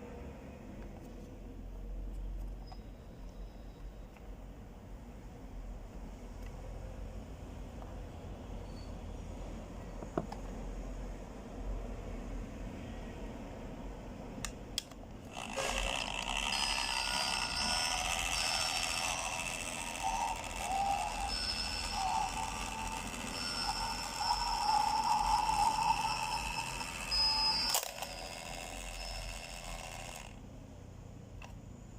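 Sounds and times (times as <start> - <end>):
toy mechanism clicks: 14.4 - 30.4
toy mechanism whirring: 15.2 - 30.4
electronic wavering high tones: 15.4 - 30.3.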